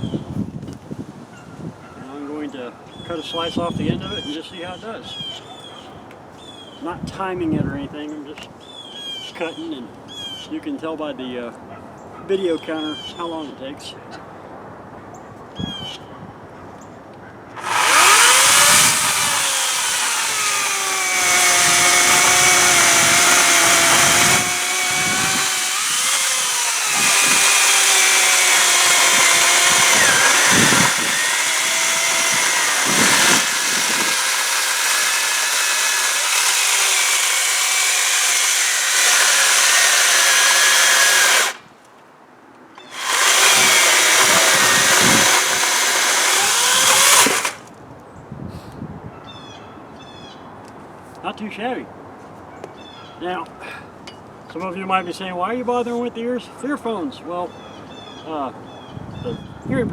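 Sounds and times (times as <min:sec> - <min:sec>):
electric chainsaw cutting log: 0:17.6 - 0:41.6, 0:42.8 - 0:47.7.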